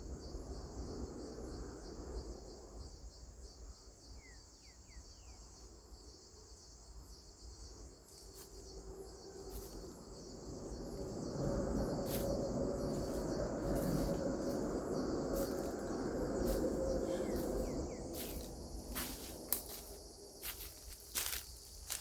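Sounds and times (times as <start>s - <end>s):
insect chorus chirring: 0.0s - 22.0s
broad rushing noise: 9.5s - 21.3s.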